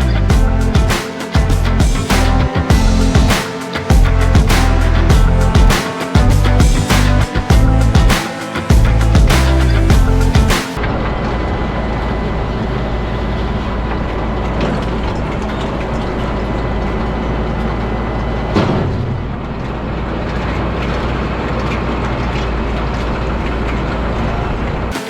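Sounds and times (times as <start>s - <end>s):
tractor engine running: 0.0s - 10.6s.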